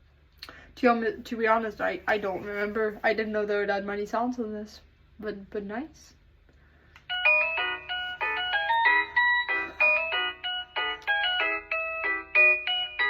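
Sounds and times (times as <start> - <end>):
electronic doorbell chime melody: 7.1 - 13.0.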